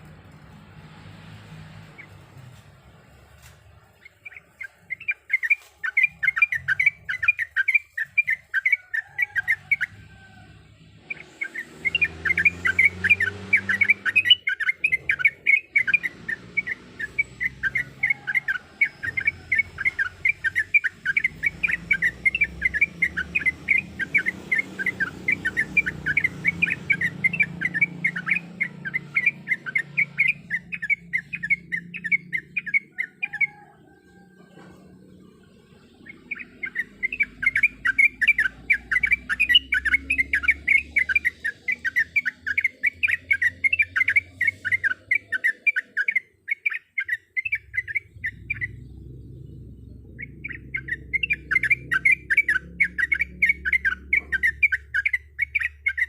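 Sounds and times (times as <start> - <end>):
bulbul singing bubbly chatter: 35.8 - 56.0.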